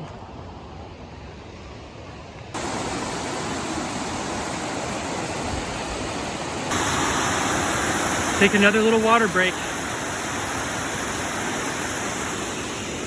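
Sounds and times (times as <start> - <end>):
waterfall rushing: 2.6 - 13.0.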